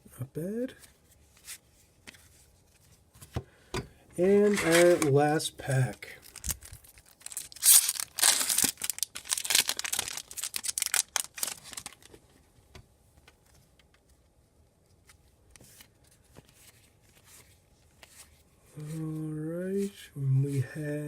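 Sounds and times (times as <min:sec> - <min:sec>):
cards being handled: 0:00.7 - 0:03.4, 0:04.2 - 0:12.2, 0:13.2 - 0:20.0
wrapper tearing and crinkling: 0:04.4 - 0:05.2, 0:06.2 - 0:12.1.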